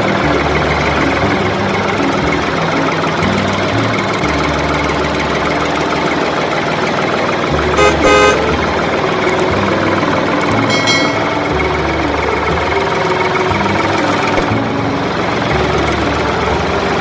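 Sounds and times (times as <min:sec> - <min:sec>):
rattling engine: 0:00.0 - 0:17.0
horn toots: 0:07.7 - 0:08.7.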